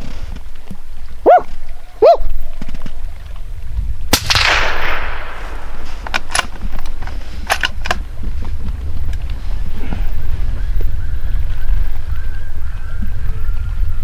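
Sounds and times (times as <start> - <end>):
wind rumble on microphone: 0.0 - 14.0
rifle shot: 4.1 - 8.2
sharp clicks and knocks: 5.9 - 8.0.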